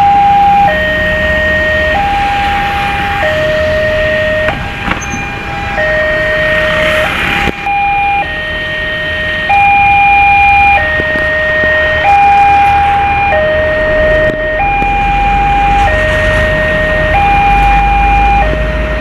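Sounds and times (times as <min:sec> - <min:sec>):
two-tone electronic warning alarm: 0:00.0 - 0:19.0.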